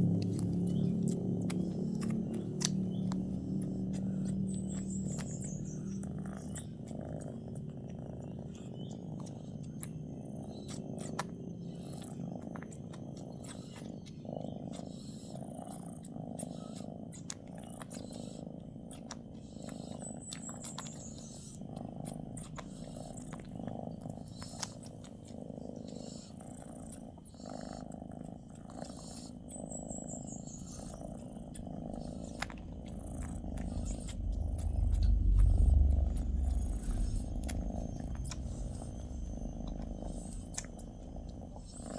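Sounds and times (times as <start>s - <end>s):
cat purring: 0.0s - 41.9s
cat soft snoring: 0.0s - 41.9s
low rumble: 30.8s - 41.9s.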